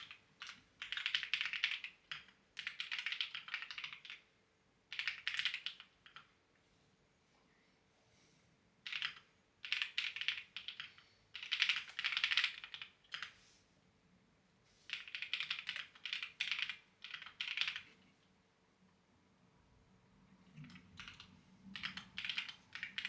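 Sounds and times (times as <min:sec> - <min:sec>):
clacky keyboard typing: 0:00.0 - 0:04.3, 0:04.9 - 0:06.3, 0:08.8 - 0:13.3, 0:14.9 - 0:18.0, 0:20.5 - 0:23.0.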